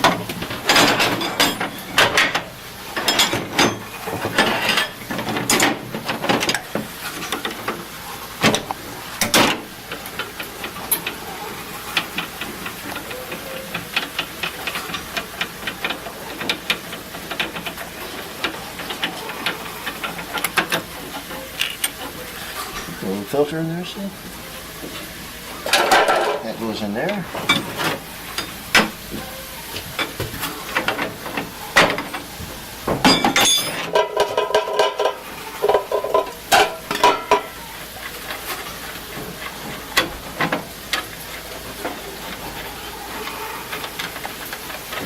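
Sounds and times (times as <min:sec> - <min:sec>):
metal scraping and knocking: 0:27.3 - 0:41.2.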